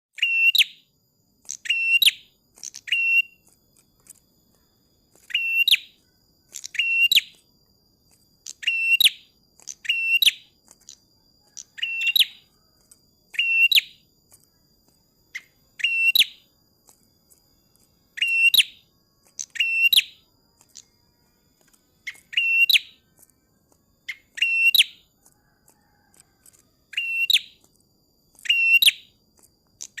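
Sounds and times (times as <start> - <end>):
bird chirping: 0.2 - 30.0.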